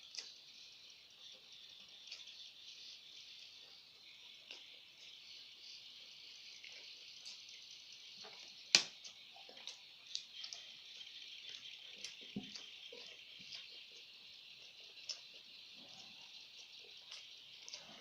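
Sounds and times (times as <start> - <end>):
insects chirring: 0.0 - 18.0.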